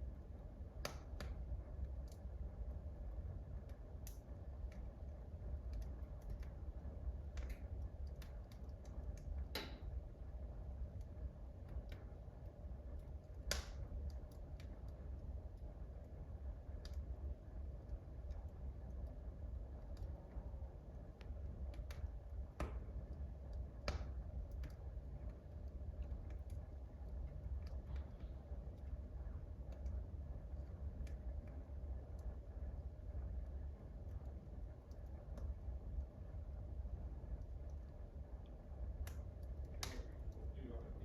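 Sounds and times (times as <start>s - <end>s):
low steady rumble: 0.0s - 41.0s
wood fire crackling: 0.0s - 41.0s
wood fire pop: 0.7s - 2.4s, 3.5s - 10.3s, 10.9s - 17.1s, 17.8s - 32.4s, 39.0s - 40.6s.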